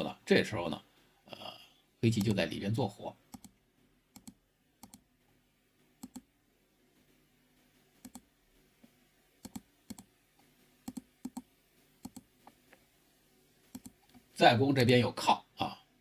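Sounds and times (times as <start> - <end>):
computer mouse clicks: 2.2 - 2.4, 3.3 - 5.0, 6.0 - 6.3, 8.0 - 8.3, 9.4 - 10.1, 10.8 - 12.8, 13.7 - 14.2.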